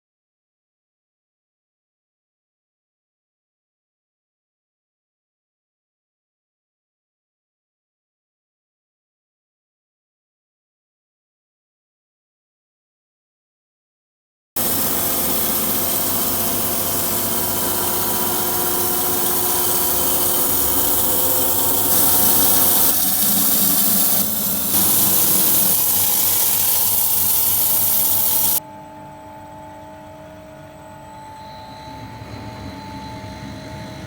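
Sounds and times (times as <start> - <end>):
mill motor humming: 14.6 - 28.6
saw blade cutting log: 14.6 - 28.6.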